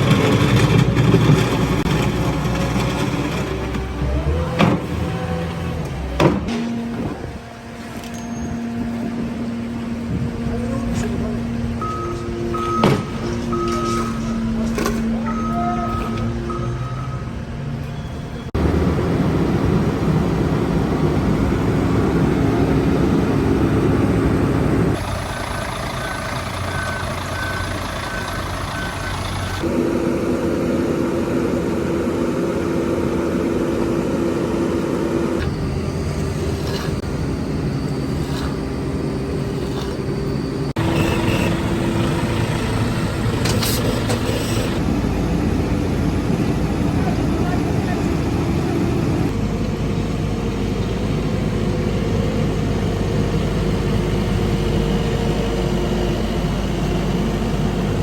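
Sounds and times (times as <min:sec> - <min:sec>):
heavy machinery diesel engines: 0:00.0 - 0:58.0
faint beeping alarm: 0:11.8 - 0:14.6, 0:15.2 - 0:18.4, 0:25.0 - 0:29.6.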